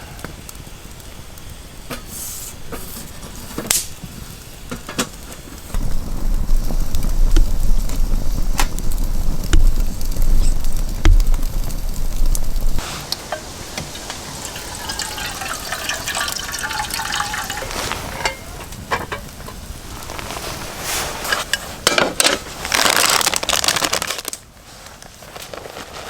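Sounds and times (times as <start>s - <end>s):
gas burner flame rumble: 0.0s - 26.0s
sharp igniter clicks: 3.6s - 14.2s.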